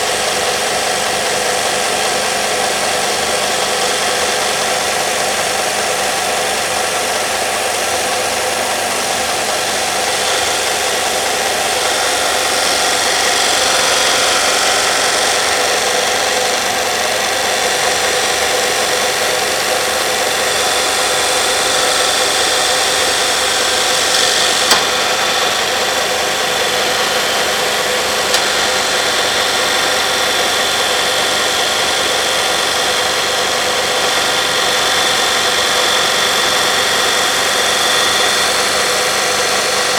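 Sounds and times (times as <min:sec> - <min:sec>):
belt sander grinding: 0:00.0 - 0:39.9
sharp clicks: 0:09.6 - 0:30.2.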